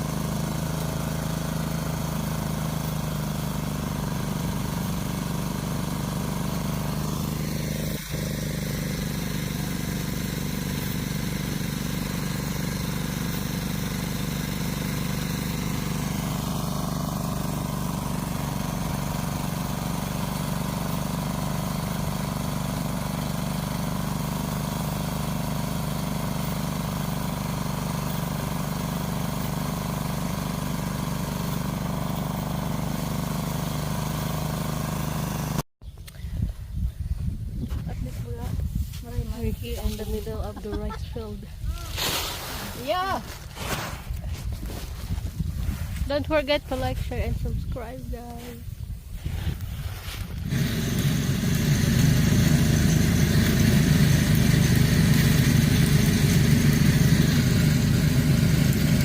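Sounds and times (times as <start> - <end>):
small engine running: 0.0 - 35.7, 49.5 - 59.0.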